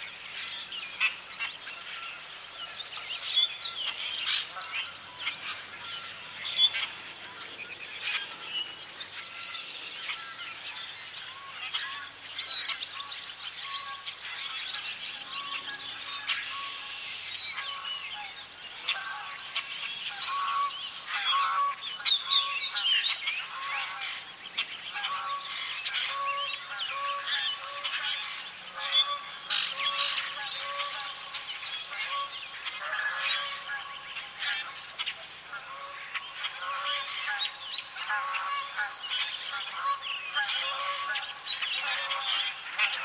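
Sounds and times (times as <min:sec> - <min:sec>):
songbird chorus: 0:00.0 - 0:43.0
geese honking: 0:18.9 - 0:22.8, 0:25.0 - 0:43.0.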